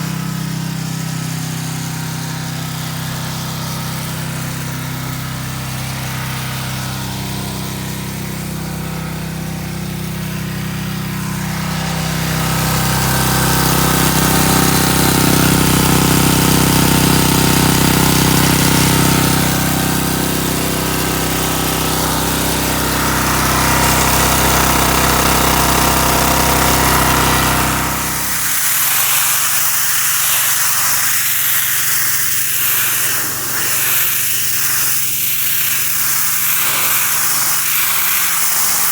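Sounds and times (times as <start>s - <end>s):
pressure washer engine running: 0.0s - 38.9s
high-pressure water spray hiss: 11.8s - 38.9s.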